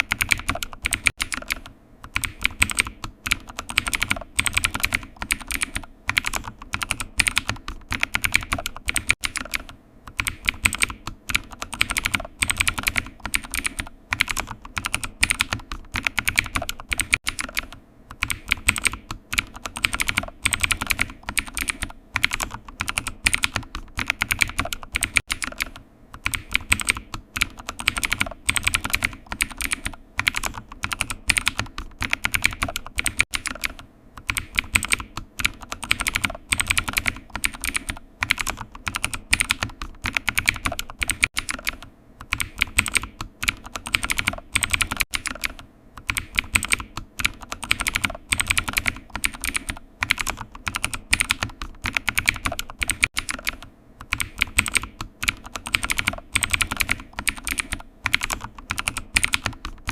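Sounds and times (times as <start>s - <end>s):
keyboard typing: 0.0s - 59.9s.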